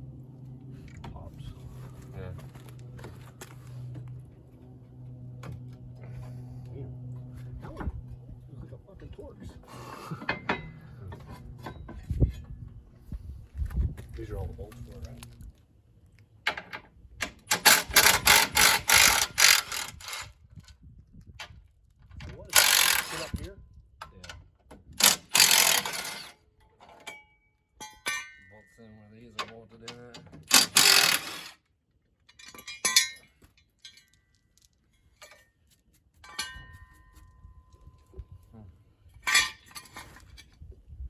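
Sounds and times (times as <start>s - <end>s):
ratchet wrench clicking: 25.0s - 26.3s, 30.5s - 31.6s.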